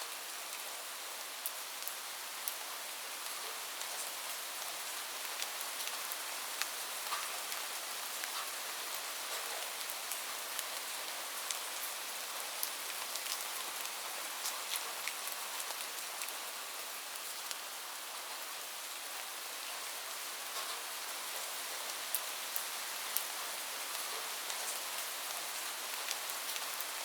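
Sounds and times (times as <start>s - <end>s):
steady rainfall hiss: 0.0s - 27.0s
raindrops ticking close by: 5.2s - 16.4s.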